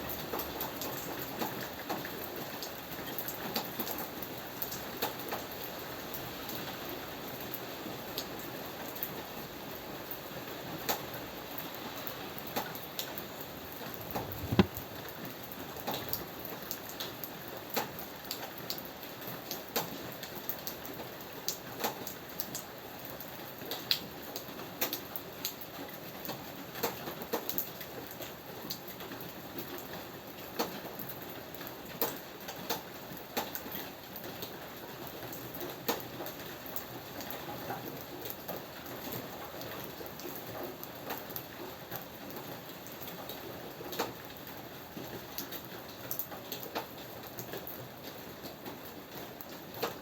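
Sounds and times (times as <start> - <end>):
rain hissing: 11.4 - 15.0
raindrops ticking on hard surface: 12.4 - 29.9, 35.2 - 50.0
deep thump: 14.3 - 14.8.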